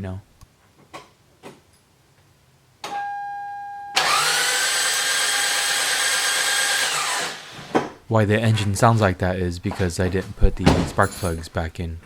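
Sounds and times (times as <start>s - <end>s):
engine starter cranking: 4.0s - 7.4s.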